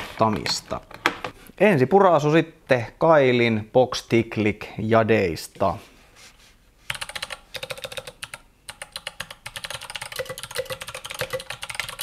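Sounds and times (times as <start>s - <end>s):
clicky mechanical keyboard typing: 6.9s - 12.0s.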